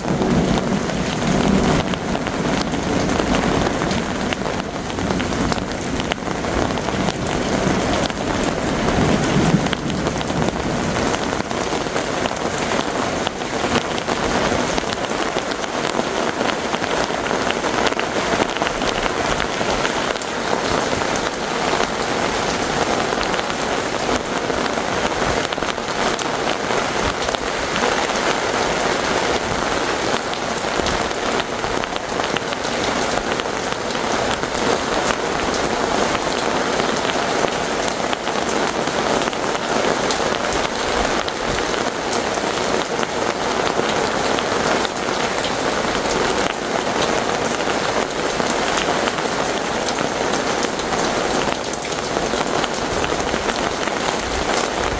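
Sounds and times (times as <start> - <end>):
low rumble of thunder: 0.0 - 12.9
heavy rain pattering: 0.0 - 54.9.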